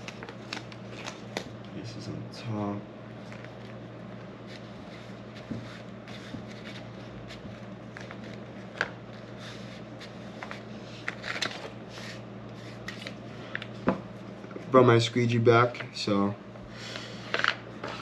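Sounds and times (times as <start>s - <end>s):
vinyl film crinkling: 0.0s - 1.8s, 3.2s - 11.9s, 12.8s - 13.8s.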